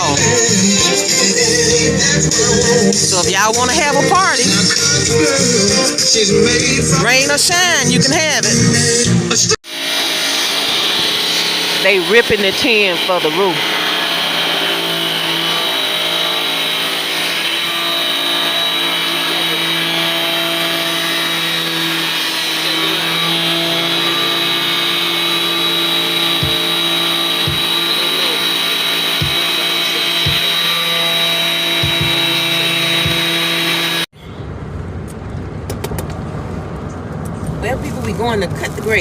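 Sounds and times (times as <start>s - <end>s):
power saw cutting metal sheets: 0.0s - 6.2s, 9.6s - 34.1s.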